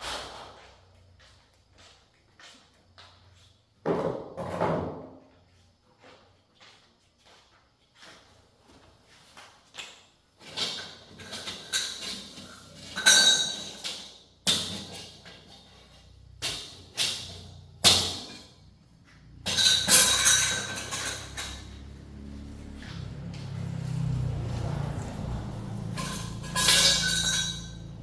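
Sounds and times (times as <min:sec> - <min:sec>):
metallic knocks and clinks: 0:11.3 - 0:14.9, 0:19.4 - 0:22.0, 0:25.1 - 0:28.0.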